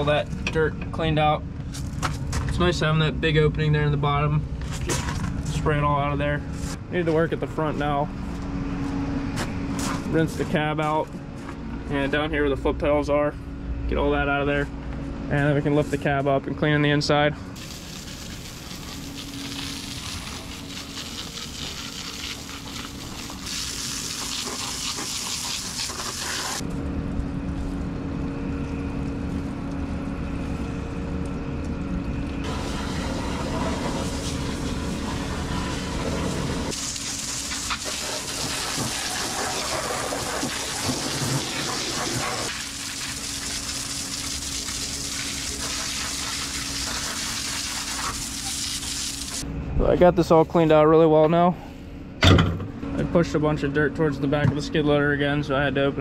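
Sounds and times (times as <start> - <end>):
water spraying hard: 17.6 - 26.6, 32.4 - 49.4.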